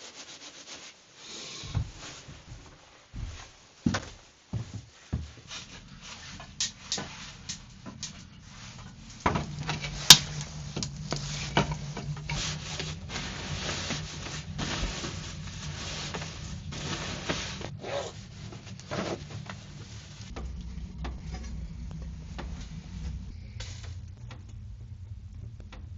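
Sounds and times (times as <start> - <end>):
rubbing and knocking of objects: 0.0 - 25.9
steady low hum: 1.7 - 25.9
dense rushing noise: 5.4 - 25.9.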